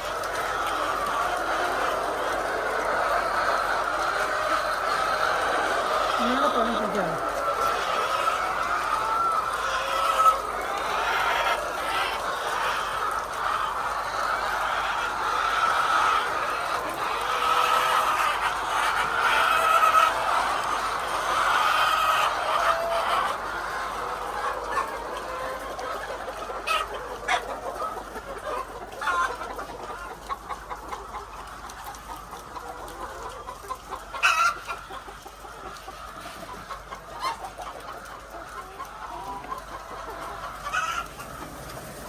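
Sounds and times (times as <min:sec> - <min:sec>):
hens clucking: 0:00.0 - 0:42.0.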